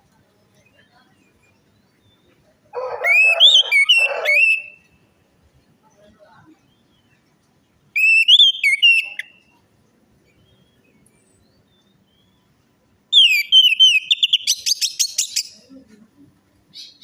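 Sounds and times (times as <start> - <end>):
thrush whistled song: 3.0 - 4.9, 8.0 - 9.3, 13.2 - 15.3.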